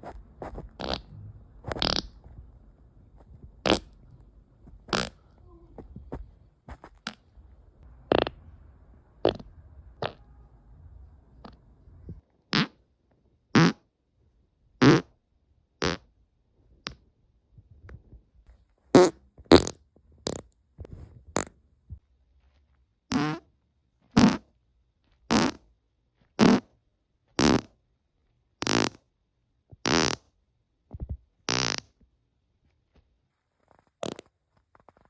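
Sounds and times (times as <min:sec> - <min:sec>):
person farting: 0:00.8 - 0:02.2, 0:03.6 - 0:03.9, 0:04.9 - 0:05.2, 0:08.1 - 0:08.3, 0:09.2 - 0:09.4, 0:12.5 - 0:12.8, 0:13.5 - 0:13.8, 0:14.8 - 0:15.1, 0:15.8 - 0:16.1, 0:19.0 - 0:20.4, 0:23.1 - 0:23.5, 0:24.2 - 0:24.5, 0:25.3 - 0:25.6, 0:26.4 - 0:26.7, 0:27.4 - 0:27.7, 0:28.6 - 0:29.0, 0:29.8 - 0:30.3, 0:31.4 - 0:32.0, 0:34.0 - 0:34.3.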